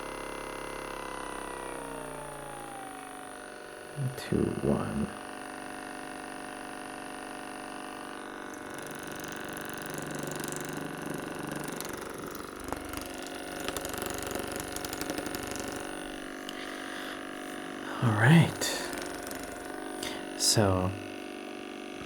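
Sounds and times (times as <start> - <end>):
massage gun hammering: 8.0 - 17.8, 18.7 - 20.1.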